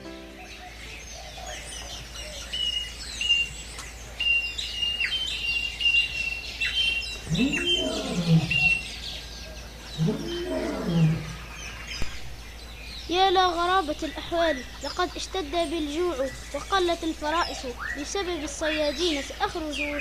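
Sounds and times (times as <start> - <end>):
birds chirping and twittering: 0.0 - 20.0
low animal call: 7.2 - 11.9.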